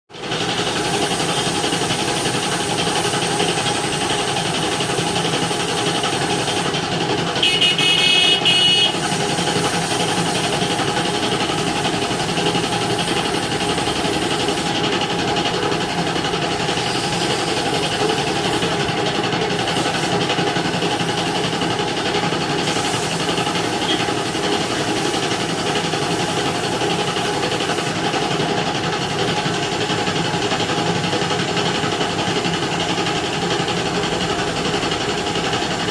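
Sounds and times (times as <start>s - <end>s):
engines and street traffic drone: 0.1s - 35.9s
vehicle horn: 7.4s - 9.0s, 23.8s - 24.1s.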